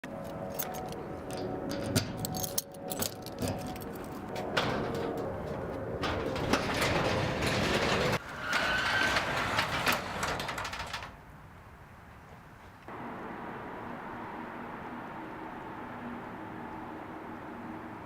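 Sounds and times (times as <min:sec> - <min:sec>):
metallic mechanism rattling and clicking: 0:00.2 - 0:05.3, 0:06.0 - 0:11.2
steady low hum: 0:12.8 - 0:18.0.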